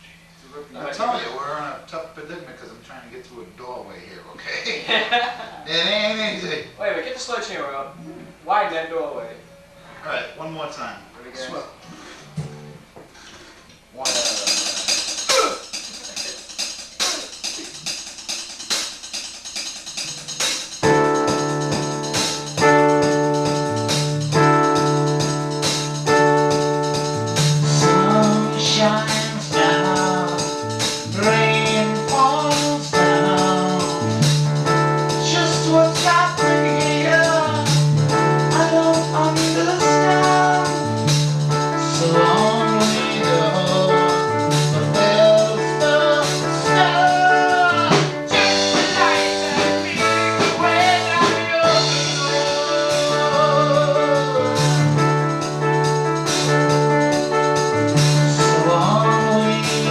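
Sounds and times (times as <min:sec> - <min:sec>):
drums and tambourine: 0:14.0 - 0:59.9
keyboard chords: 0:14.0 - 0:59.9
bass line: 0:20.1 - 0:59.9
person singing: 0:27.7 - 0:34.4, 0:35.2 - 0:37.8, 0:38.5 - 0:41.0, 0:41.8 - 0:55.0, 0:58.3 - 0:59.9.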